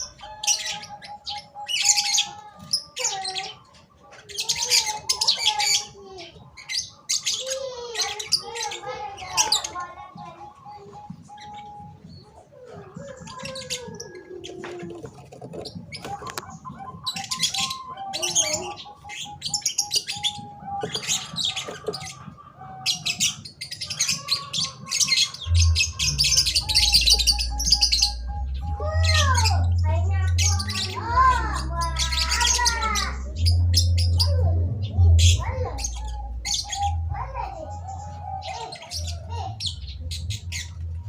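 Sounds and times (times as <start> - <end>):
doves calling: 0.0 - 41.0
small birds chirping: 0.0 - 41.0
low steady hum: 25.4 - 38.4.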